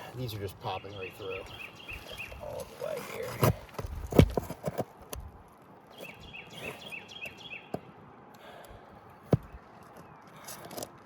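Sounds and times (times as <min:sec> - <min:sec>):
bird chirping: 0:00.0 - 0:03.6, 0:05.8 - 0:08.2
outdoor background noise: 0:00.0 - 0:11.0.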